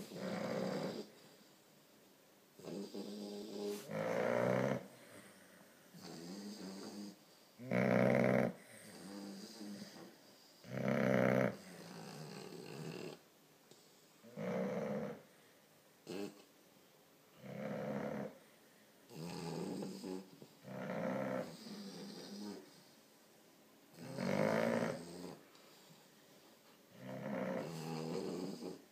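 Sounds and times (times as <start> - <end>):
dogs snoring: 0.0 - 1.4, 2.6 - 15.4, 16.0 - 16.5, 17.3 - 18.5, 19.1 - 23.0, 23.9 - 26.1, 26.9 - 28.9
soft breathing: 2.6 - 7.6.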